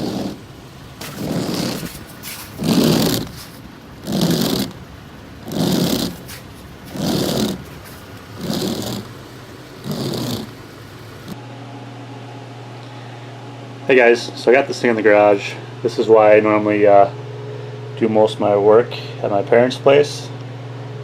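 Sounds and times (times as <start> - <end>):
windshield wipers swishing: 0.0 - 11.4
steady low hum: 0.0 - 21.0.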